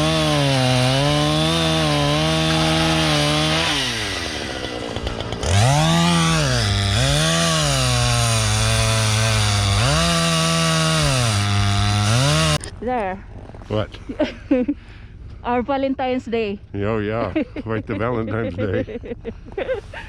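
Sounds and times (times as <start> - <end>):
chainsaw cutting wood: 0.0 - 12.6.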